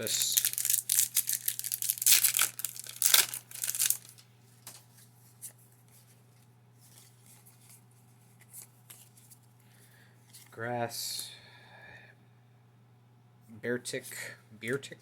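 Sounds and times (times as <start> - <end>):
foil wrapper tearing and crinkling: 0.0 - 4.2.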